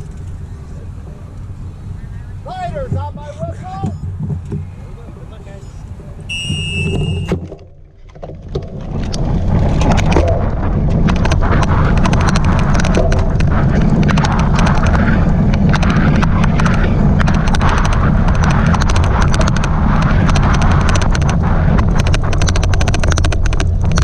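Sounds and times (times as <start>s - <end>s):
bike clicking and rattling: 0.0s - 24.0s
whistle blowing: 5.6s - 7.4s
wind rushing over microphone: 8.3s - 24.0s.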